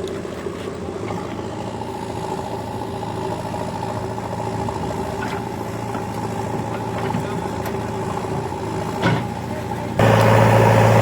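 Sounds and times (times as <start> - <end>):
diesel engine running: 0.0 - 11.0.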